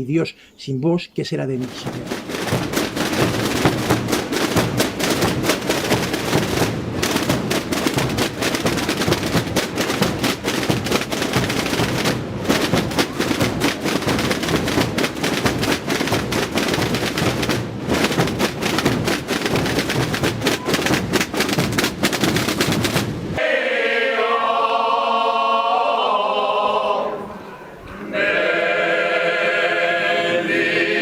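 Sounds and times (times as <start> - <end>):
massed drums beating rapidly: 1.6 - 23.4.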